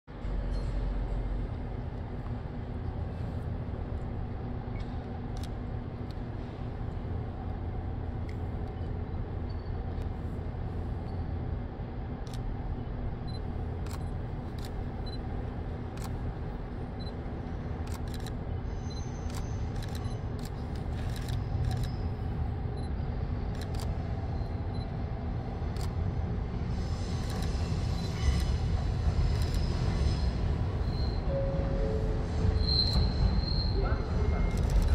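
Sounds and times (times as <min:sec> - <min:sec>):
electric train humming: 0:00.1 - 0:34.9
train wheels squealing: 0:00.2 - 0:01.2, 0:08.8 - 0:09.9, 0:18.6 - 0:22.2, 0:24.3 - 0:24.9, 0:26.7 - 0:34.9.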